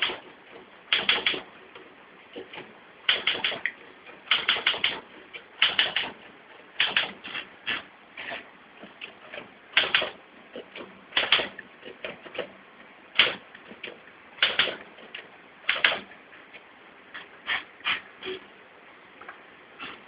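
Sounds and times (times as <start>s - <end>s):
typewriter keys striking: 0.9s - 1.4s, 3.1s - 3.6s, 4.3s - 5.0s, 5.6s - 6.2s, 6.8s - 7.2s, 9.8s - 10.2s, 14.4s - 14.8s, 15.7s - 16.1s.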